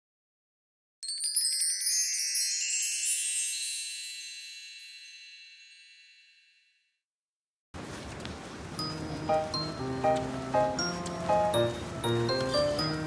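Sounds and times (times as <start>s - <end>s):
high metallic chimes ringing: 1.0s - 6.7s.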